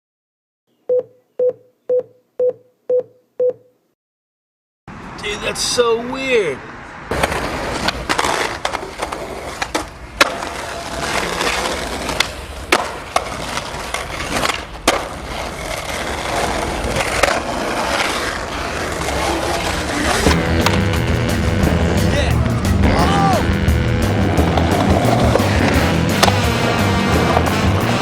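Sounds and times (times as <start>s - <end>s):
skateboard wheels rolling on pavement: 4.9s - 28.0s
skateboard clacks: 7.1s - 23.1s, 24.1s - 28.0s.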